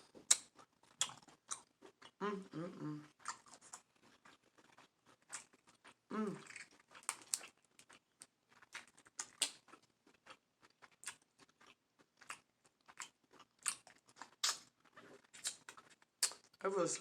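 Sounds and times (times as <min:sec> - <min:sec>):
person chewing and smacking: 0:00.0 - 0:16.6.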